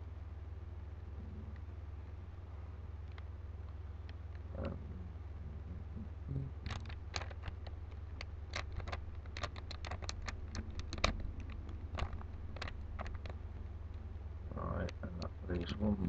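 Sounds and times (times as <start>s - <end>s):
steady low hum: 0.0s - 16.0s
plastic puzzle cube clicking: 6.6s - 13.4s.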